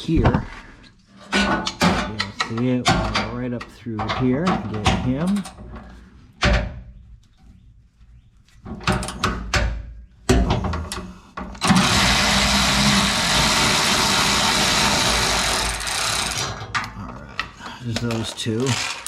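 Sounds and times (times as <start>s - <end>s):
electric ratchet running: 11.6s - 16.6s, 18.7s - 19.0s.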